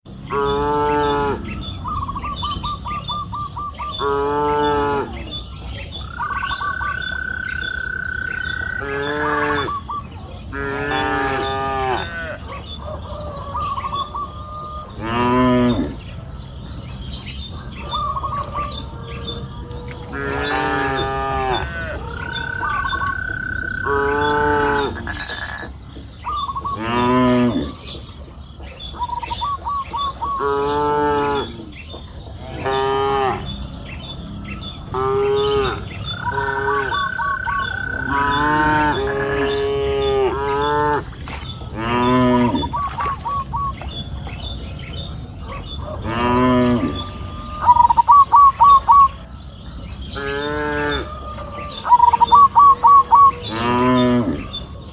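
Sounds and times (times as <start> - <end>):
cows mooing: 0.2 - 1.7, 4.0 - 5.4, 6.6 - 9.9, 10.5 - 12.5, 14.0 - 16.3, 18.1 - 25.7, 26.5 - 28.1, 30.4 - 31.8, 32.4 - 43.3, 45.8 - 48.4, 50.1 - 54.9.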